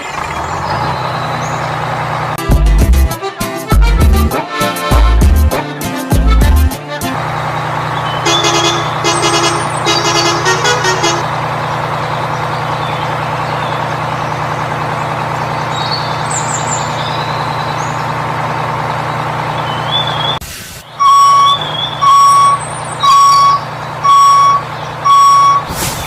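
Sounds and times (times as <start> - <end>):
heavy vehicle engine running: 0.0 - 26.0
short horn toots: 8.2 - 11.3.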